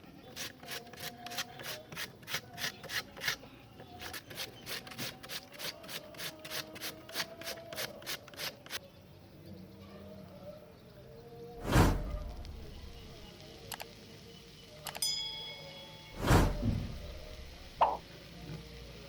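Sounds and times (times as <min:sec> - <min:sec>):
potato being grated: 0:00.2 - 0:08.8.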